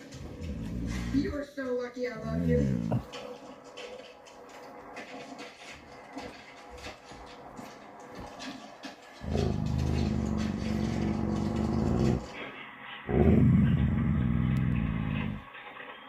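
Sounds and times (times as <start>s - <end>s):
dog growling low: 0.0s - 1.4s, 2.1s - 3.1s, 9.2s - 12.4s, 13.1s - 15.4s.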